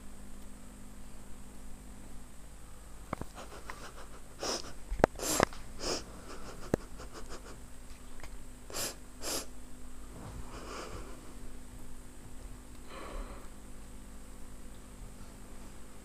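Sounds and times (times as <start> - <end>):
faint steady hum: 0.0 - 16.0
bird hissing bursts: 4.4 - 6.1, 8.7 - 9.5.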